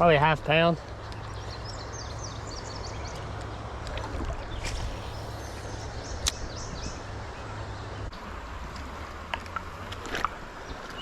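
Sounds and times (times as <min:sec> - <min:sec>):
creek water running: 0:00.0 - 0:11.0
sharp click: 0:06.2 - 0:06.4.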